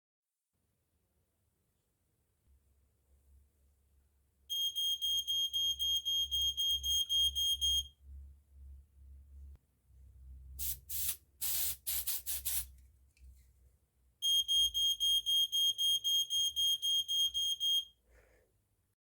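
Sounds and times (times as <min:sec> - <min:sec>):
smoke detector beeping: 0:04.5 - 0:07.9, 0:14.2 - 0:17.9
short hissing bursts: 0:10.6 - 0:12.7.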